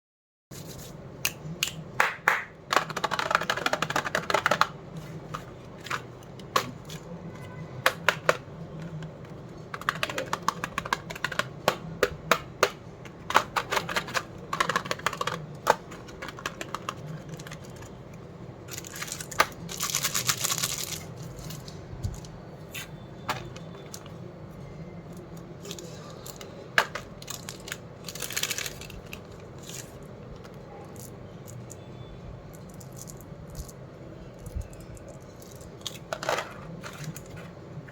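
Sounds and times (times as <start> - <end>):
plastic wrappers crinkling: 18.7 - 22.4, 25.3 - 30.4.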